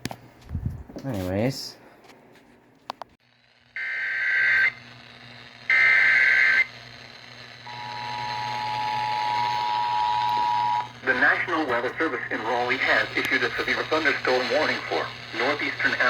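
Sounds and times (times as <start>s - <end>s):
buzzy data bursts: 3.4s - 16.0s.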